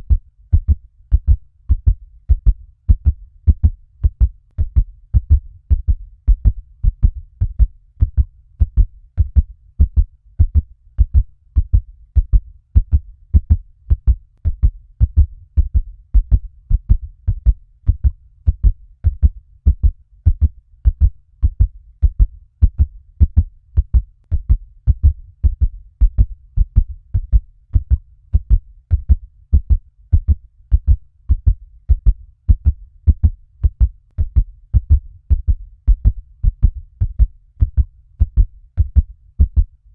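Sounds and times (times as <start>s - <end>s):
fast heartbeat: 0.0s - 39.9s.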